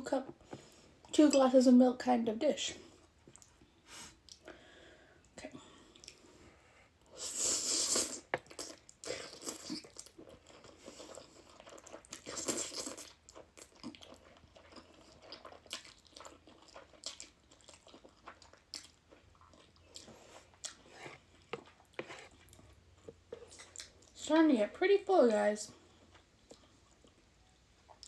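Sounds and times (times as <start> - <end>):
person chewing noodles: 3.0 - 3.6, 4.2 - 4.6, 5.9 - 6.4, 7.0 - 24.2, 25.8 - 27.2.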